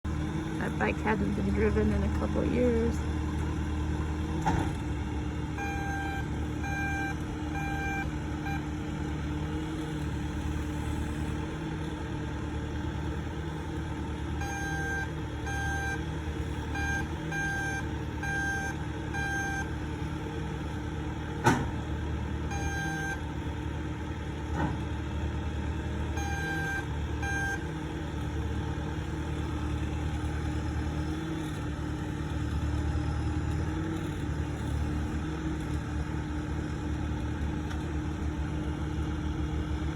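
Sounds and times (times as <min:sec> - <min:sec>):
loader engine running: 0:00.0 - 0:39.9
reversing alarm beeping: 0:05.6 - 0:08.7, 0:14.4 - 0:16.0, 0:16.7 - 0:19.8, 0:22.5 - 0:23.2, 0:26.1 - 0:27.6.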